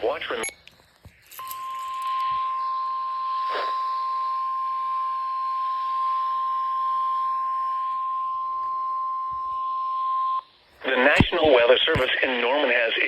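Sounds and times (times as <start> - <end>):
faint radio hiss: 0.0 - 0.6, 10.4 - 13.0
steady alarm tone: 1.2 - 10.5.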